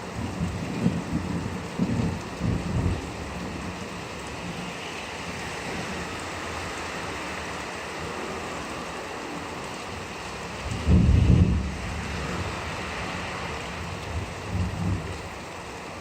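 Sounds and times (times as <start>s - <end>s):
low rumble of thunder: 0.0s - 4.7s, 10.6s - 15.8s
rain falling steadily: 0.0s - 16.0s.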